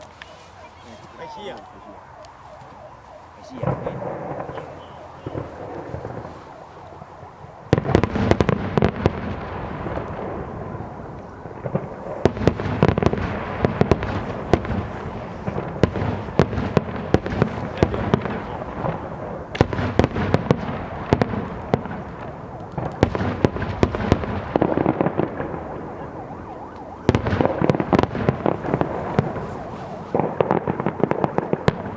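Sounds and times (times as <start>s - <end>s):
fireworks bangs and crackling: 0.0s - 31.9s.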